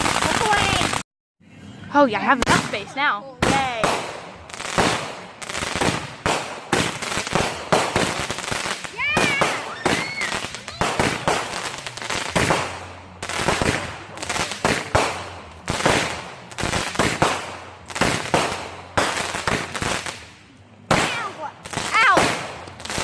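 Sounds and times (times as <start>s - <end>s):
fireworks banging: 0.0s - 1.0s, 2.1s - 23.0s.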